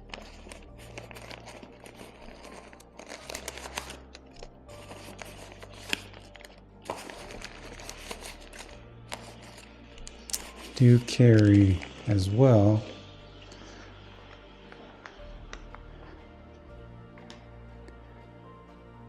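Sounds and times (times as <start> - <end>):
plastic packaging crinkling: 0.0 - 13.1.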